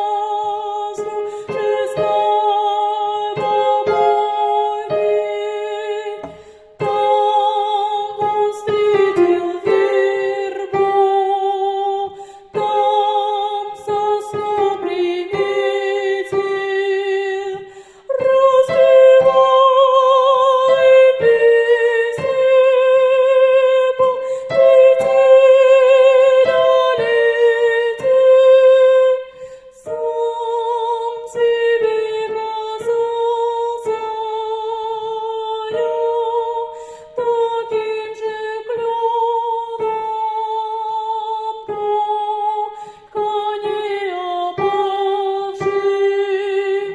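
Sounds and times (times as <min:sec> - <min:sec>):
woman singing with vibrato: 0:00.0 - 0:46.9
singer breathing: 0:01.2 - 0:01.6, 0:06.2 - 0:06.8, 0:12.1 - 0:12.5, 0:17.6 - 0:18.1, 0:24.2 - 0:24.5, 0:29.3 - 0:29.8, 0:36.7 - 0:37.2, 0:42.7 - 0:43.1.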